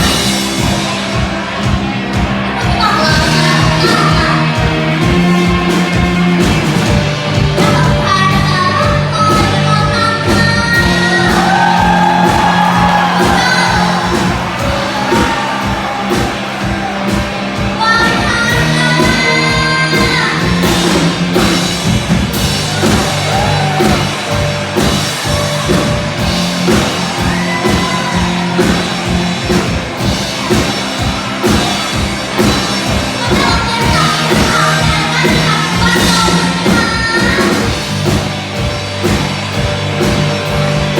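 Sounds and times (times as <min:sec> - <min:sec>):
live rock band playing: 0:00.0 - 0:40.9
audience shouting and whooping: 0:10.7 - 0:20.7, 0:22.0 - 0:37.6.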